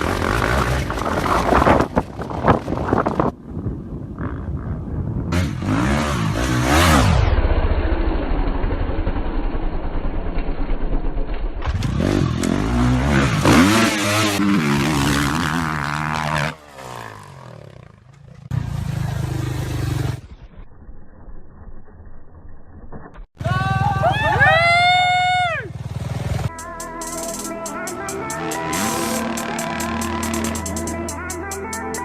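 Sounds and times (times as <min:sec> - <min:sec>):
dirt bike engines revving: 0:00.0 - 0:03.3, 0:11.8 - 0:20.2, 0:28.0 - 0:31.1.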